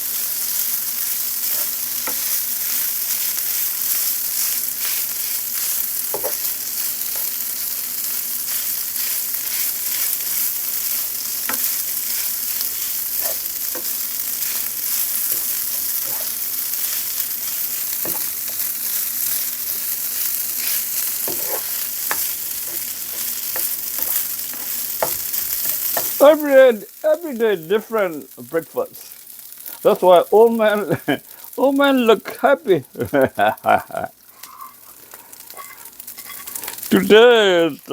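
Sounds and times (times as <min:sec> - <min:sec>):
rice sizzling in oil: 0:00.0 - 0:37.9
stirring scrapes and knocks: 0:01.4 - 0:07.4, 0:08.5 - 0:18.7, 0:20.2 - 0:26.2, 0:35.5 - 0:36.9.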